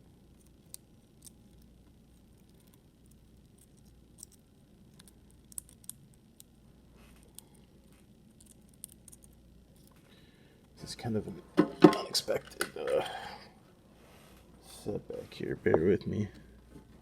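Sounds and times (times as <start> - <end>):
soft rustle: 13.9 - 15.7.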